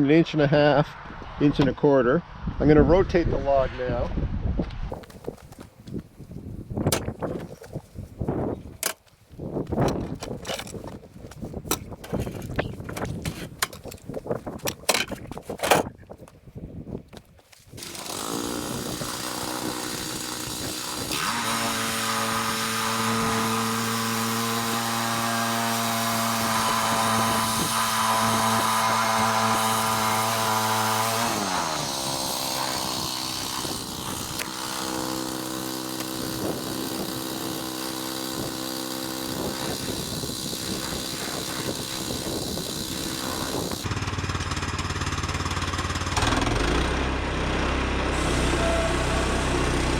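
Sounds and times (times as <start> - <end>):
band blade cutting log: 6.8 - 7.8, 17.7 - 43.9
sawmill engine running: 17.8 - 49.9.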